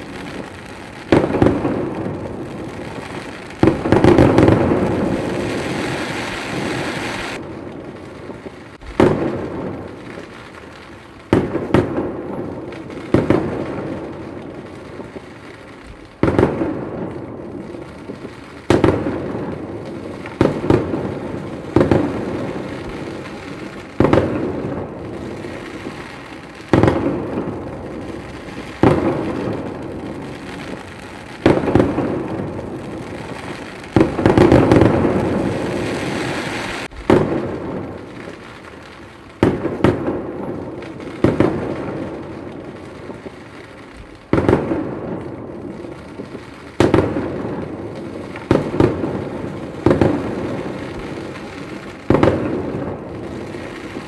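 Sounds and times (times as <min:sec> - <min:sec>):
firework shells bursting: 0:18.0 - 0:38.6.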